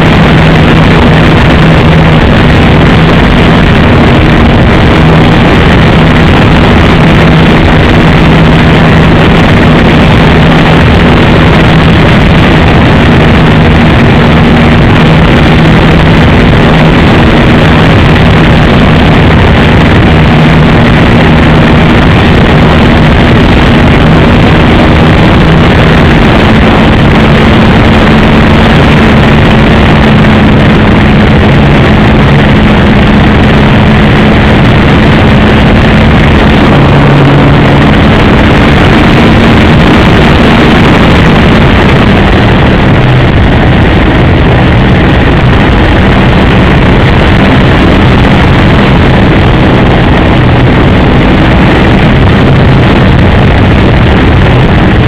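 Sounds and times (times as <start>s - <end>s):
heavy rushing noise: 0.0s - 55.0s
model plane engine droning: 0.0s - 55.0s.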